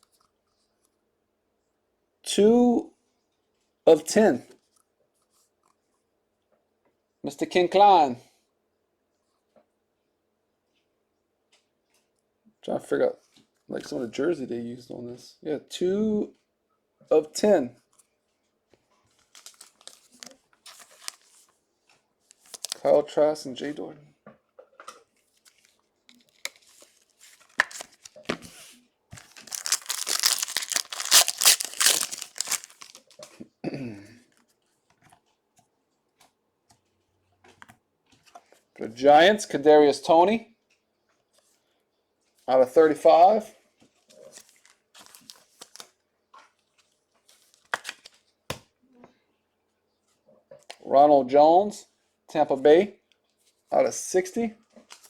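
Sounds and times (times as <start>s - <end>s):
trading cards rustling and sliding: 19.2s - 21.5s, 22.3s - 22.9s, 25.4s - 33.3s
wrapper tearing and crinkling: 19.3s - 21.3s, 22.4s - 22.8s, 26.3s - 28.2s, 29.2s - 33.2s.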